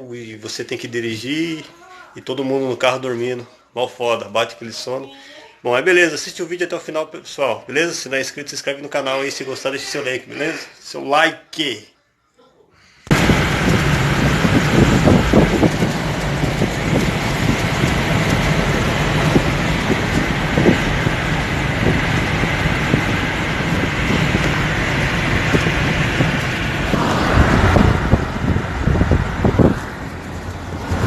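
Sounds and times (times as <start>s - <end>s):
car road and engine noise: 13.1s - 31.0s.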